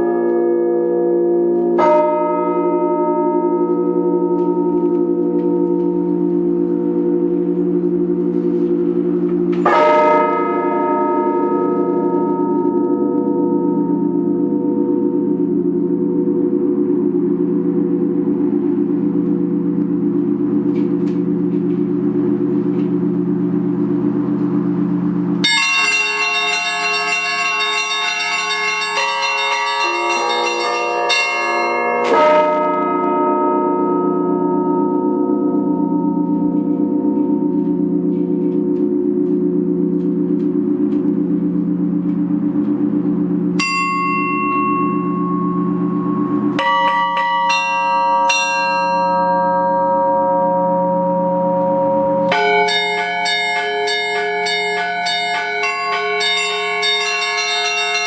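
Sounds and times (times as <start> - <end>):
deep bell ringing: 0.0 - 58.0
small high bells chiming: 25.4 - 32.6, 46.6 - 58.0.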